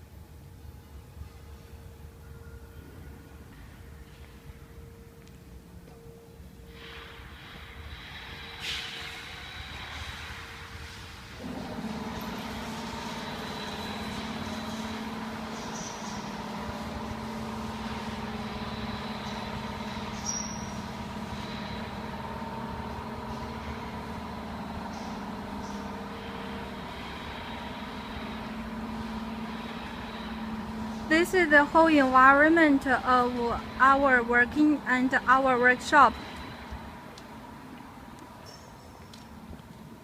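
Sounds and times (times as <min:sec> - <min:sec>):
machinery hum: 0:00.0 - 0:40.0
faint steady tones: 0:11.4 - 0:40.0.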